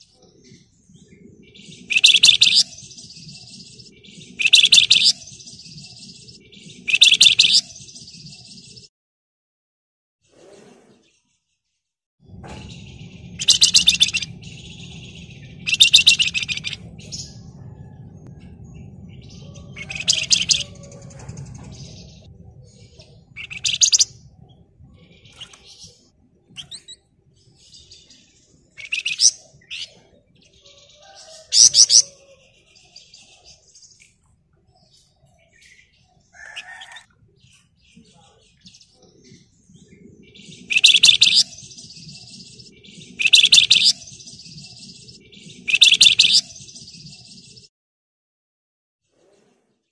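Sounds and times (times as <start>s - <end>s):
bird chirps: 0.0s - 8.9s, 12.3s - 47.7s
steady low hum: 12.3s - 27.6s
songbird rattling trills: 12.6s - 17.8s, 18.5s - 22.3s.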